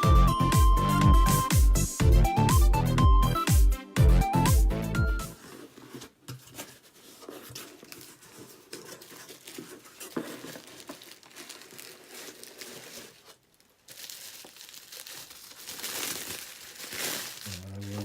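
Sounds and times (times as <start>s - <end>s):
packaging crinkling and tearing: 5.4s - 18.0s.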